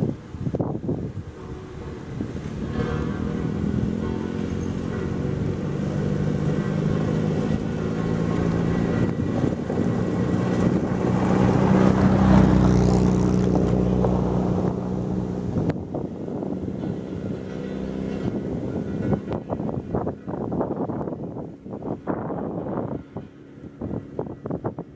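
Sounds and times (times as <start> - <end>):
road roller diesel engine running: 0.0 - 24.9.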